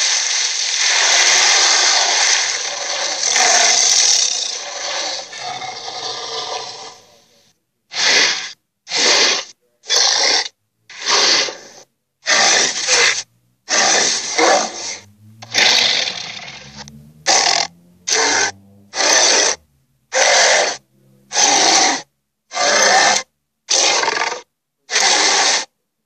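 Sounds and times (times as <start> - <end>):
creature hissing snorts: 7.9 - 19.6.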